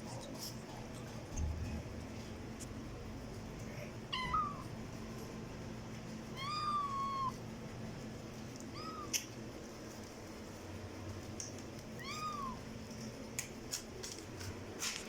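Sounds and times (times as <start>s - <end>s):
cat meowing: 4.1s - 4.7s, 6.3s - 7.4s, 8.7s - 9.3s, 12.0s - 12.6s.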